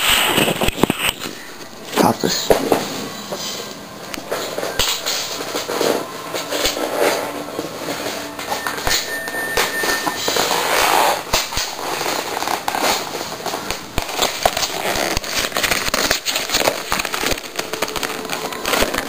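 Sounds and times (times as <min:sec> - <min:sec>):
cardboard and plastic packaging crinkling: 0:09.6 - 0:19.0.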